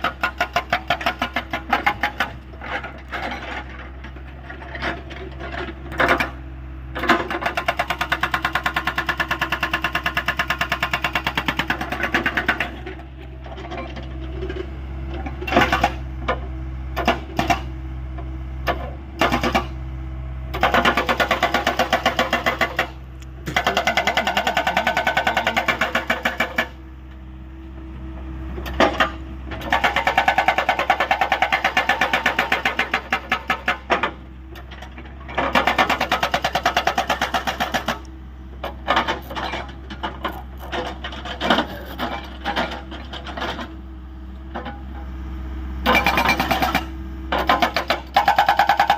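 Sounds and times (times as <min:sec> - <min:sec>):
hydraulic rock breaker hammering: 0:00.0 - 0:04.2, 0:07.0 - 0:13.0, 0:15.4 - 0:16.0, 0:18.6 - 0:19.8, 0:20.5 - 0:26.8, 0:28.6 - 0:43.7, 0:45.8 - 0:48.9
excavator engine humming: 0:00.0 - 0:48.9.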